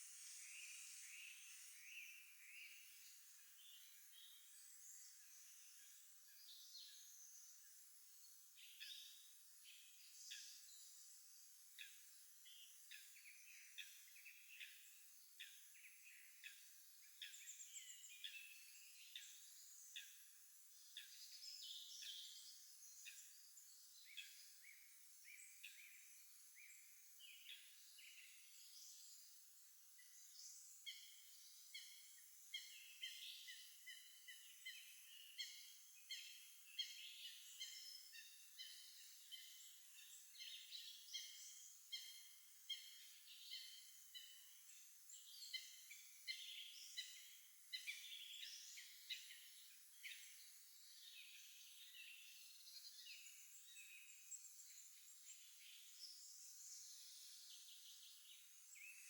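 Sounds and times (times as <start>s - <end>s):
songbirds chirping: 0.0s - 59.0s.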